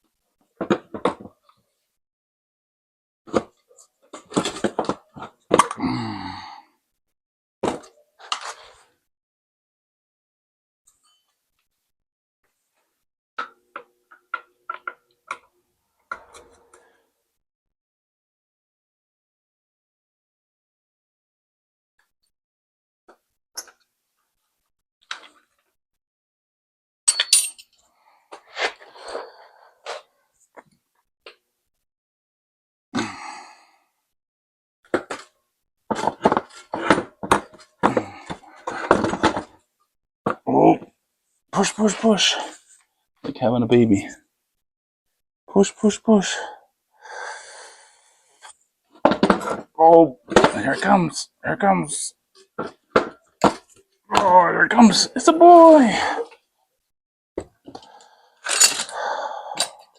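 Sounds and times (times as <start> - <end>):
metal parts rattling: 58.5 - 58.9.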